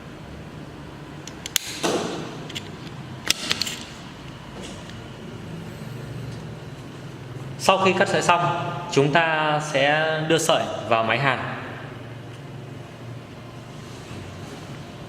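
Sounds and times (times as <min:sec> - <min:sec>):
fiber cleaver clicks and snaps: 0:01.2 - 0:02.7.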